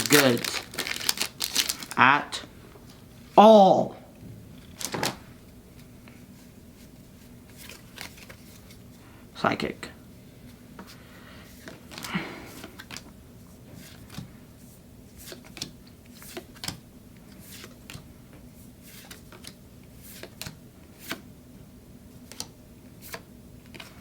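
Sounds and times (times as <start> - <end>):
card pack rustle: 0.0 - 2.0, 4.6 - 5.2, 7.5 - 8.8
trading cards flipping and sliding: 5.8 - 8.8, 15.1 - 18.1, 18.8 - 21.3, 22.2 - 24.0.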